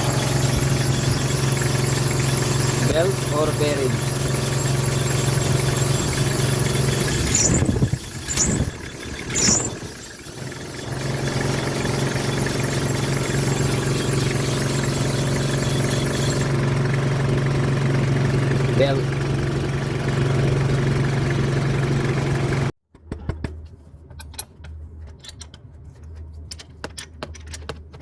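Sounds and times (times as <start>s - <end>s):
car engine idling: 0.0s - 21.3s.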